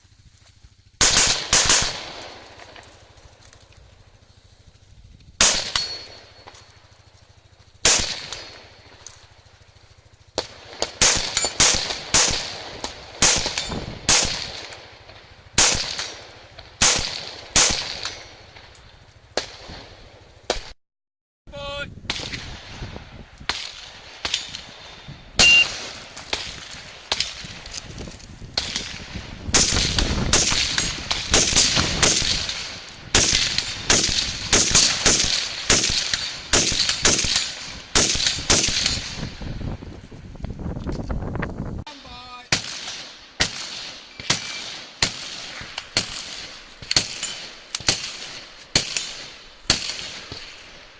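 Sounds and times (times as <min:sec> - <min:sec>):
rifle shots with echo: 0:01.0 - 0:04.8, 0:05.4 - 0:20.7, 0:22.1 - 0:27.8, 0:28.5 - 0:39.5, 0:42.5 - 0:50.9.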